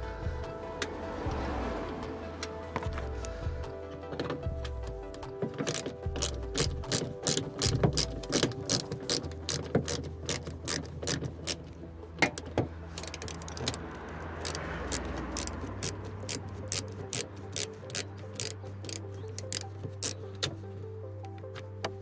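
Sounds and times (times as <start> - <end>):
socket ratchet clicking: 5.6 - 20.6.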